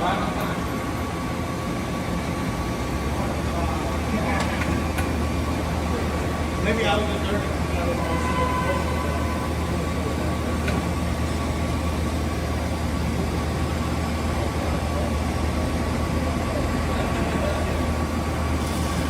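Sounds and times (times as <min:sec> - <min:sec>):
machine high whine: 0:04.8 - 0:19.0.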